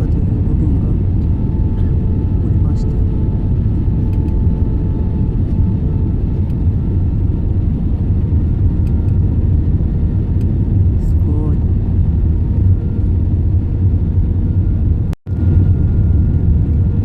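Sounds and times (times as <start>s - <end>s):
airliner cabin rumble: 0.0s - 17.0s.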